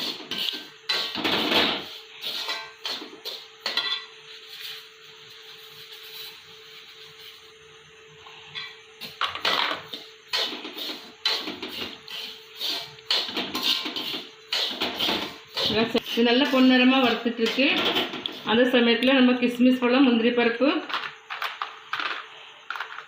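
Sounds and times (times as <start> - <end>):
spatula scraping in a pan: 0.0 - 1.2, 1.8 - 7.6, 9.9 - 16.7
steady hum: 0.0 - 23.0.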